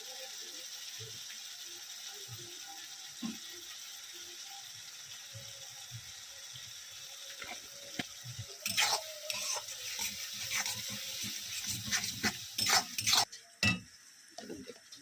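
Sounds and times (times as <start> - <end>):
frying hiss: 0.0 - 15.0
metal utensil scraping a pan: 8.5 - 13.4.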